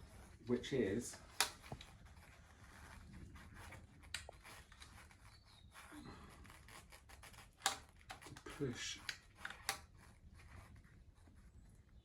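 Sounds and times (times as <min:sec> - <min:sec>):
handling bicycle tyre: 0:00.0 - 0:12.0
sharp clicks: 0:01.3 - 0:01.9.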